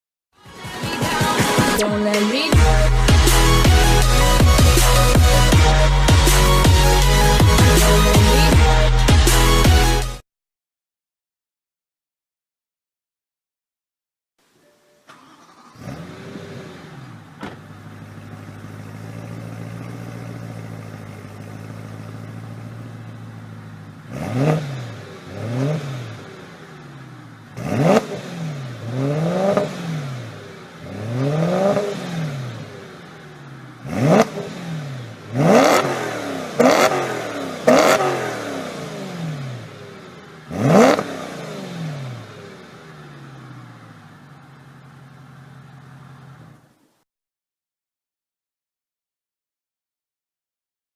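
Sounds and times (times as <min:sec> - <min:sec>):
car engine starting and idling: 0:00.5 - 0:10.2, 0:15.0 - 0:47.0
engine revving throttle blips: 0:01.6 - 0:10.2, 0:15.1 - 0:46.7.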